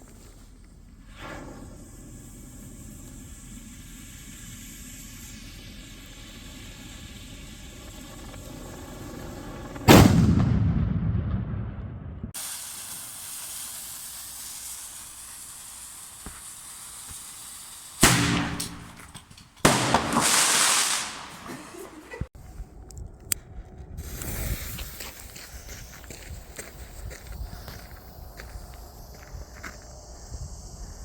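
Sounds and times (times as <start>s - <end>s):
steady hiss: 0.0s - 8.7s, 12.4s - 22.3s, 24.0s - 31.0s
rumble after bang: 9.0s - 12.4s
fireworks loud bangs: 9.8s - 17.3s, 17.9s - 22.3s.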